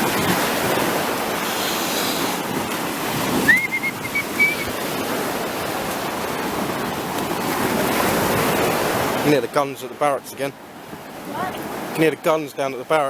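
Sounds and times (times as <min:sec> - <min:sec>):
wind on microphone: 0:00.0 - 0:09.2
surf washing on shore: 0:00.0 - 0:13.0.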